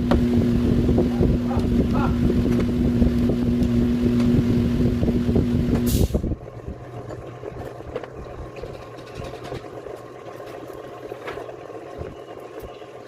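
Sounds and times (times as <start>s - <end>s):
vehicle engine whining: 0.0s - 12.8s
low hum: 0.0s - 13.0s.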